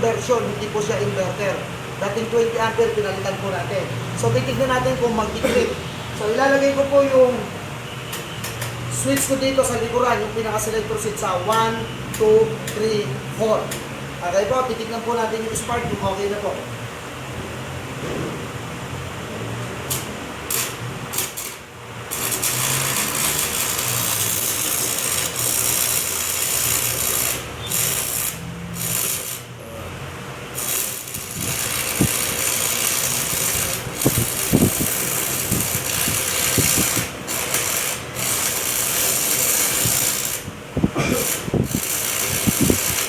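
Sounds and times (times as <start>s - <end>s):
welding arc crackling and hissing: 19.9s - 29.9s, 30.5s - 43.0s.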